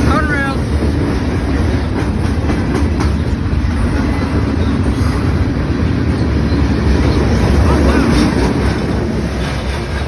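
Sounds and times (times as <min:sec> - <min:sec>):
freight train rumbling past: 0:00.0 - 0:10.0.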